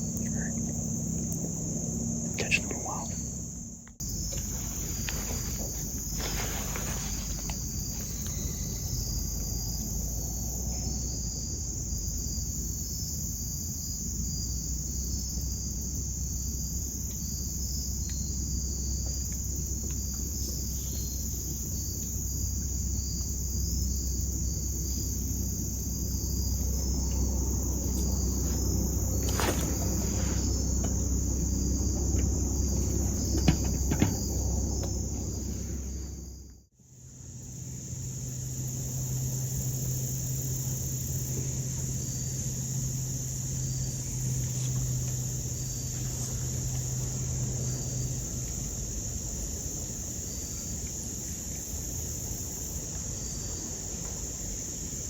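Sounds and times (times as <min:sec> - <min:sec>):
crickets and insects chirping: 0:00.0 - 0:55.0
low steady rumble: 0:00.0 - 0:55.0.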